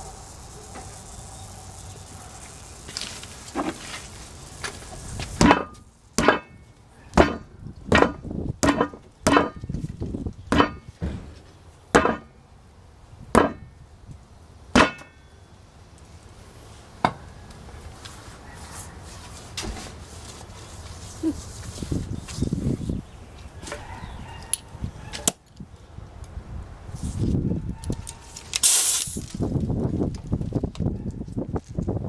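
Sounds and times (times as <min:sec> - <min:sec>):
hammer strikes with metallic ring: 0:14.8 - 0:15.2.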